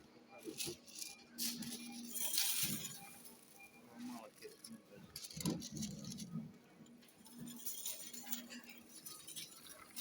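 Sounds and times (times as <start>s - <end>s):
light clinks and rattles: 7.2s - 10.0s.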